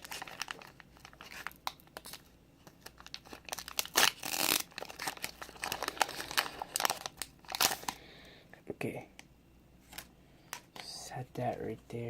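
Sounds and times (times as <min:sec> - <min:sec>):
foil wrapper crinkling: 0:00.0 - 0:08.0.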